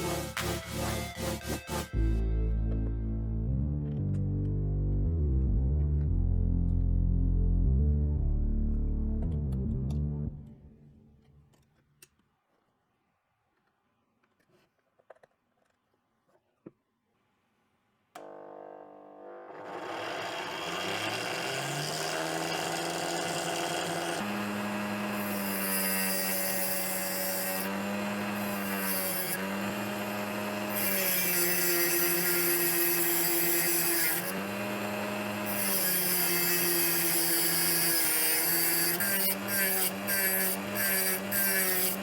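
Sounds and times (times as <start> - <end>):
sander motor humming: 18.2 - 28.6, 29.4 - 30.8.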